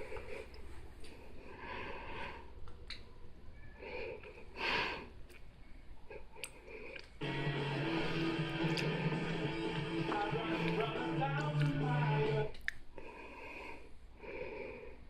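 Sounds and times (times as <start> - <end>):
music: 7.2 - 12.6.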